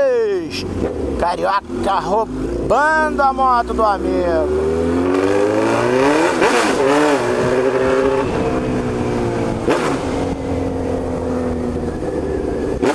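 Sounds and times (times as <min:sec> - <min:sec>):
motorcycle engine running: 0:00.3 - 0:12.9
wind rushing: 0:06.8 - 0:12.8.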